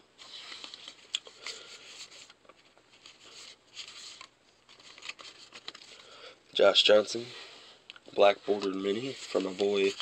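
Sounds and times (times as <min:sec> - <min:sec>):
cards rustling as flipped: 0:00.2 - 0:06.1, 0:08.2 - 0:10.0.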